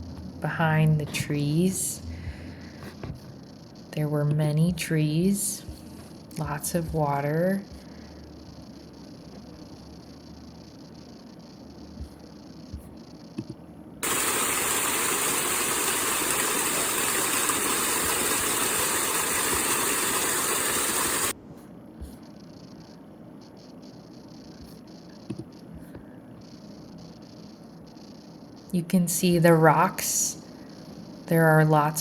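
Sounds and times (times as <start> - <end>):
river water rushing: 14.0 - 21.3.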